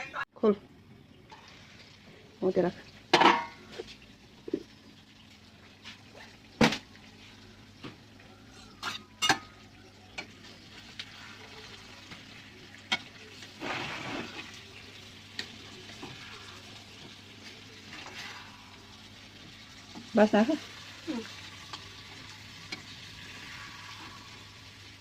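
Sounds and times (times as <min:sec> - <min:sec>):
chicken sizzling in a pan: 0:06.9 - 0:25.0.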